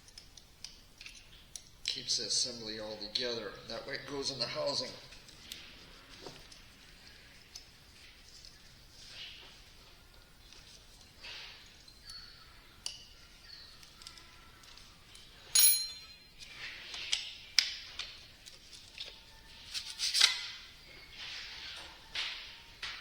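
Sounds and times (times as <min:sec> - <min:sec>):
metal parts clinking: 0:15.5 - 0:16.5.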